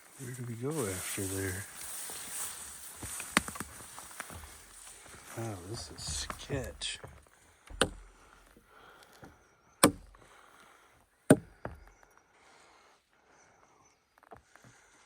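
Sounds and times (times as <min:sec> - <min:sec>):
sharp knocks: 0:07.7 - 0:08.1, 0:09.8 - 0:10.2, 0:11.3 - 0:11.8.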